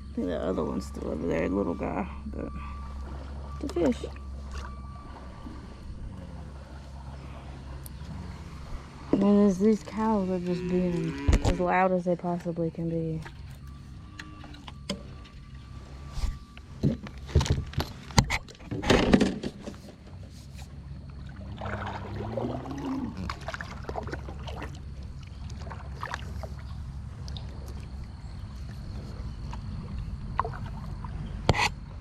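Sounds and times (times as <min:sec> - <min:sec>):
cow mooing: 0:04.9 - 0:09.2, 0:10.1 - 0:11.8, 0:13.9 - 0:14.8, 0:22.2 - 0:23.4.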